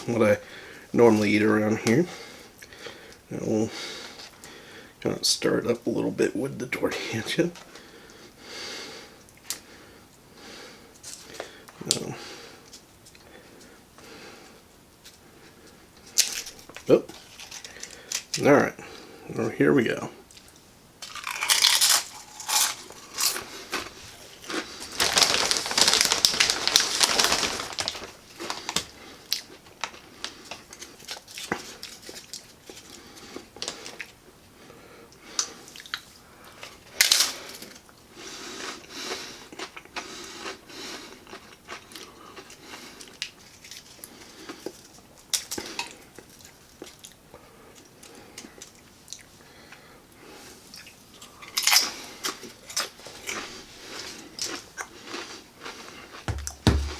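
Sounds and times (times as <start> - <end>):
crunching tortilla chips: 15.0 - 18.4, 20.4 - 34.2, 35.3 - 47.2, 50.7 - 56.9.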